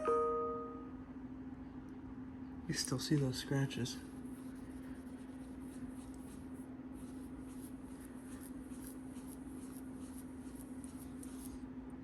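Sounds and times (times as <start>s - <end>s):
steady low hum: 0.4s - 12.0s
cloth rubbing on watch crystal: 4.0s - 11.6s.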